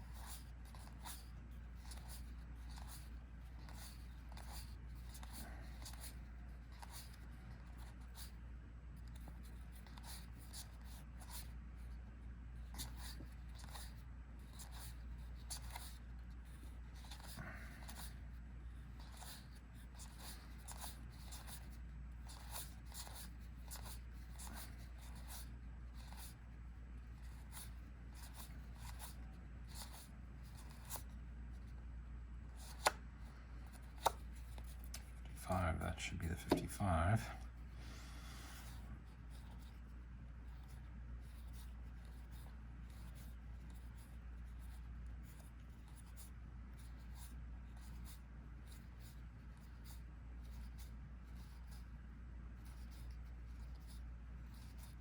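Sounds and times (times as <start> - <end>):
steady low hum: 0.0 - 55.0
trading cards sliding: 32.6 - 33.0.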